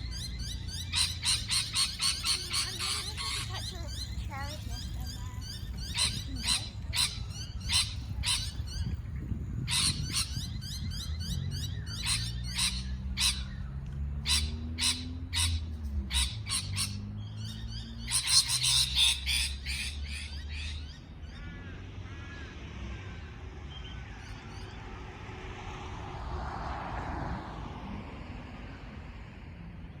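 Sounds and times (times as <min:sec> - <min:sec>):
parrot chirping and squawking: 0:00.0 - 0:08.9, 0:09.7 - 0:13.6, 0:14.2 - 0:21.5.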